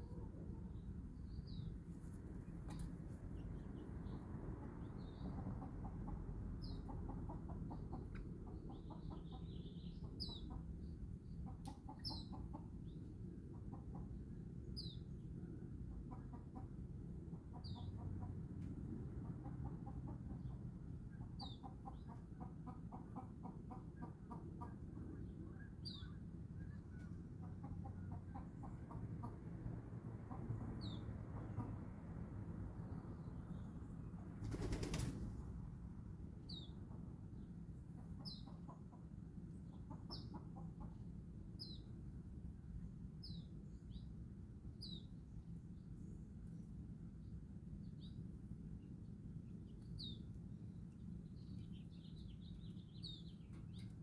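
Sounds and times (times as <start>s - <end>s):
chickens clucking: 4.6s - 14.4s, 15.8s - 25.0s, 27.0s - 29.6s, 30.2s - 31.9s, 36.8s - 41.2s.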